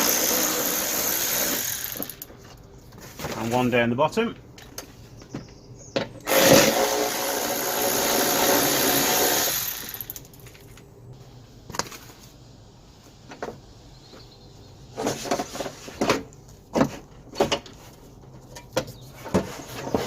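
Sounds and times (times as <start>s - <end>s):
power tool running: 0.0s - 2.3s, 6.3s - 10.2s.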